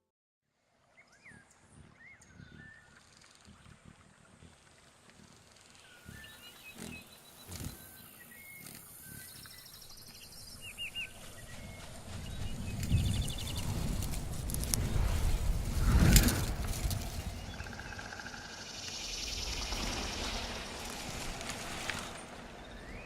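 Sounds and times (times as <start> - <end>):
deep rumble: 11.1 - 23.0.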